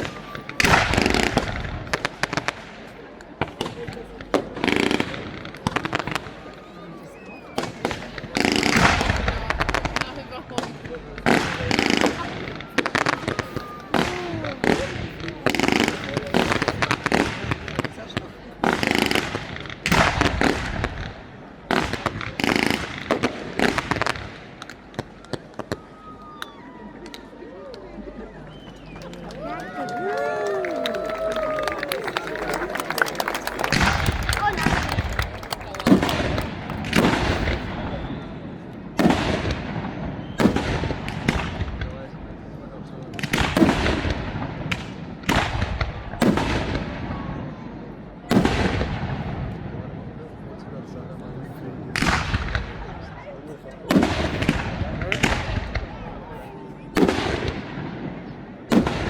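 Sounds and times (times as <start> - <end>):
fireworks banging: 0.0 - 26.0, 30.5 - 50.4, 51.8 - 59.0
rolling echo: 0.0 - 29.5, 30.2 - 59.0
firework shells bursting: 32.8 - 38.0.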